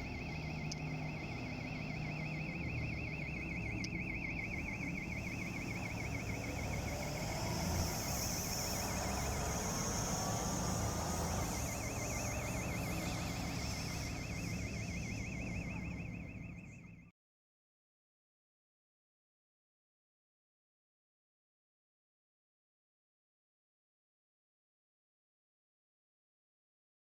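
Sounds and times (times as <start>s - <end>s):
bus engine running: 0.0s - 17.1s
warbling electronic alarm tone: 0.0s - 17.1s.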